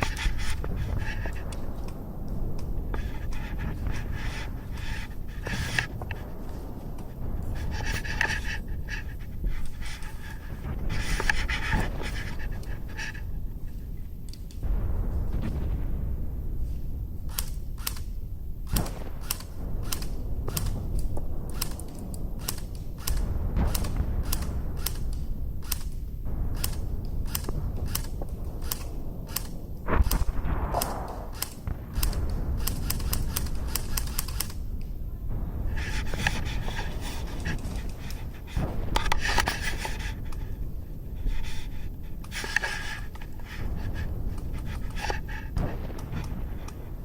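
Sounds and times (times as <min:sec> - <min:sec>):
uneven hissing: 0:00.0 - 0:47.0
airsoft gun shots clicking: 0:17.3 - 0:34.9, 0:35.7 - 0:40.6, 0:41.2 - 0:46.8.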